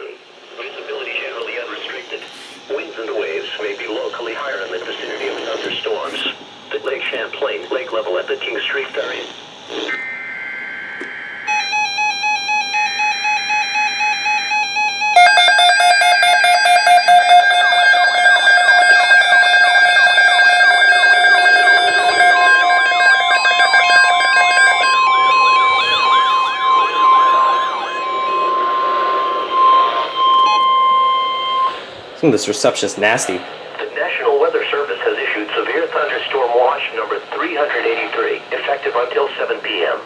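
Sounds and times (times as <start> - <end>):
warbling siren-like alarm tones: 9.0 - 32.2
rapidly pulsing beep tone: 9.9 - 32.0
steady single alarm tone: 9.9 - 32.2.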